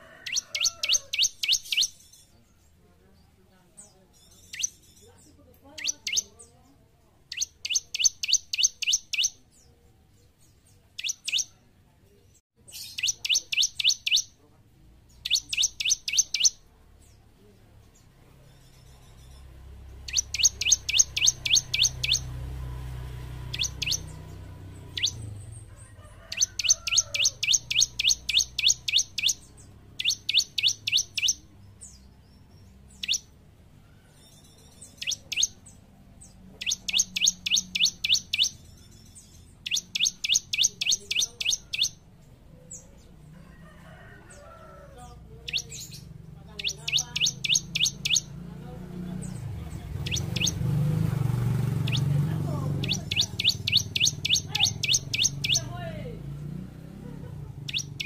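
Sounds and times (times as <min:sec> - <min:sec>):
bird singing rapid high chirps: 0:00.2 - 0:11.6, 0:12.3 - 0:14.4, 0:15.0 - 0:43.1, 0:45.4 - 0:58.0.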